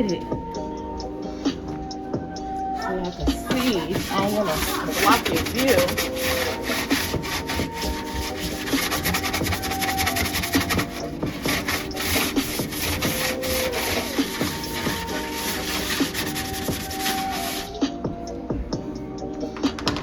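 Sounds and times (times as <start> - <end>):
soft background music: 0.0 - 20.0
scrubbing refrigerator surface: 2.8 - 18.0.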